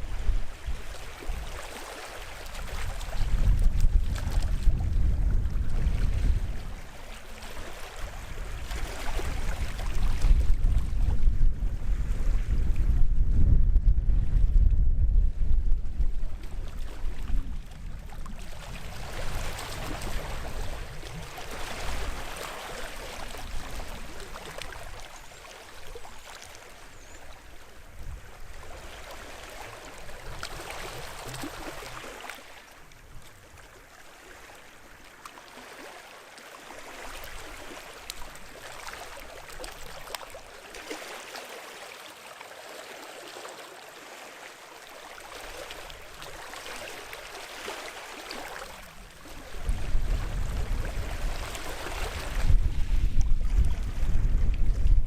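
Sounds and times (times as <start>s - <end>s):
wind rumble on microphone: 0.0s - 1.7s, 2.3s - 25.1s, 26.9s - 32.1s, 48.8s - 55.0s
small waves lapping on shore: 0.0s - 12.8s, 15.9s - 55.0s.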